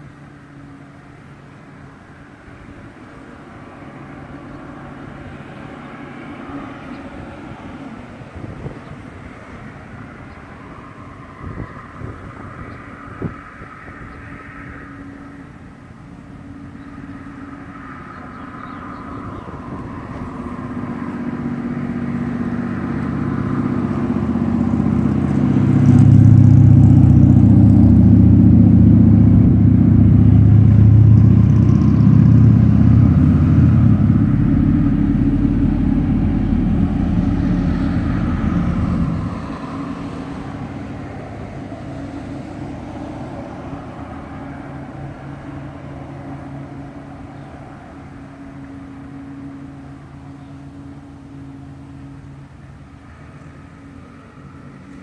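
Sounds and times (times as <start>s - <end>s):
engine low hum: 0.0s - 55.0s.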